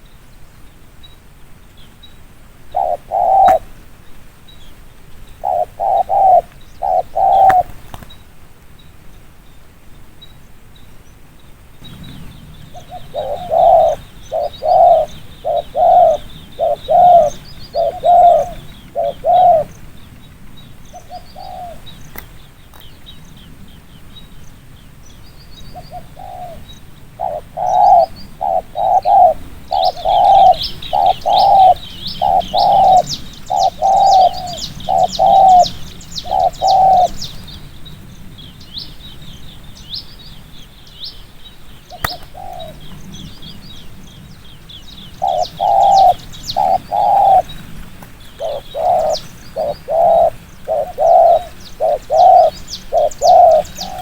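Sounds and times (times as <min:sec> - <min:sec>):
small birds chirping: 0:00.0 - 0:54.0
dove cooing: 0:02.7 - 0:03.8, 0:05.4 - 0:07.9, 0:11.8 - 0:19.9, 0:20.9 - 0:22.0, 0:25.7 - 0:37.5, 0:41.9 - 0:43.2, 0:45.0 - 0:54.0.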